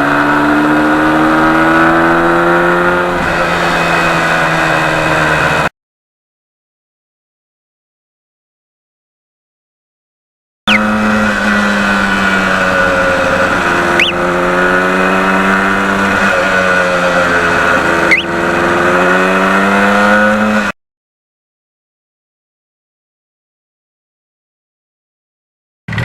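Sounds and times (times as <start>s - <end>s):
motorcycle engine running: 10.7s - 20.7s.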